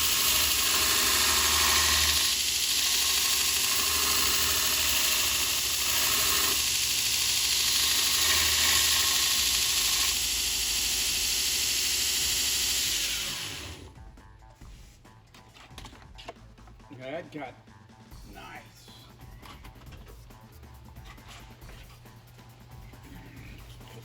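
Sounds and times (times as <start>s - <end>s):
angle grinder grinding metal: 0.0s - 13.9s.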